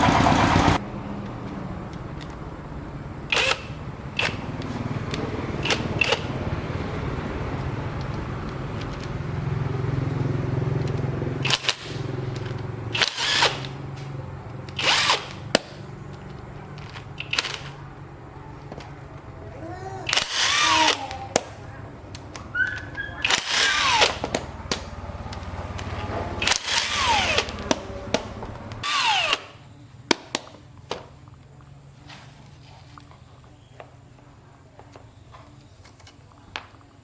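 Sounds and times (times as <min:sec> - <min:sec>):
sharp metallic clicks and clanks: 0:03.3 - 0:06.4, 0:10.7 - 0:13.8, 0:14.6 - 0:17.9, 0:22.1 - 0:31.0
machine motor humming: 0:23.2 - 0:29.6.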